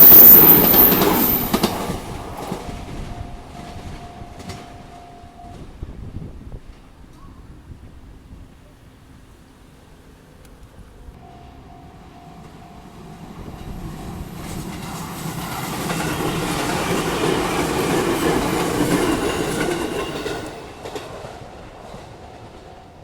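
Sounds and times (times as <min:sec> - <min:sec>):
train wheels clattering over rails: 0:00.0 - 0:04.9, 0:12.4 - 0:23.0
crossing warning bell: 0:00.0 - 0:06.3, 0:11.2 - 0:23.0.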